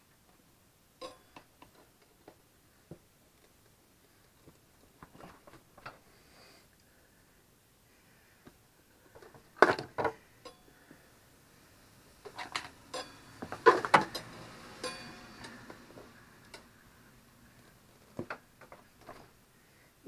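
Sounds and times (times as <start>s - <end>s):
metallic clanks and ringing: 12.9s - 13.4s, 14.1s - 15.7s.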